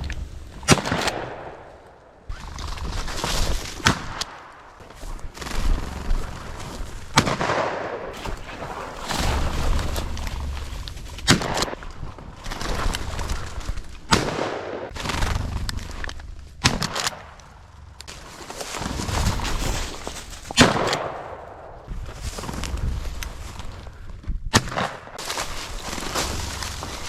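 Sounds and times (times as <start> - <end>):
shotgun shots: 7.2 - 8.4, 14.1 - 14.9, 20.5 - 21.8
rough rushing noise: 8.2 - 20.8.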